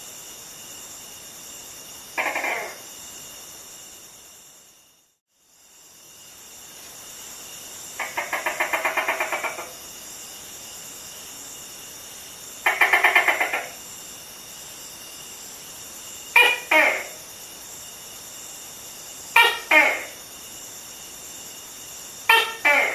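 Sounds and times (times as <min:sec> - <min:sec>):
steady high hiss: 0:00.0 - 0:22.9
gecko chattering chirps: 0:02.2 - 0:02.8, 0:16.4 - 0:17.2, 0:19.4 - 0:20.2, 0:22.3 - 0:22.9.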